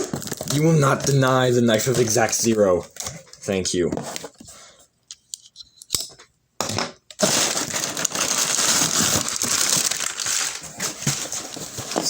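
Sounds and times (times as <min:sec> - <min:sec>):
packing paper crinkling: 0:00.0 - 0:03.4, 0:07.2 - 0:12.0.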